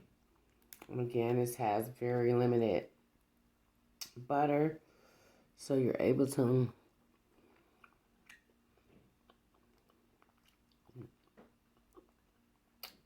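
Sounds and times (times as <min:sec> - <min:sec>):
person chewing with mouth smacks: 0:07.1 - 0:13.0.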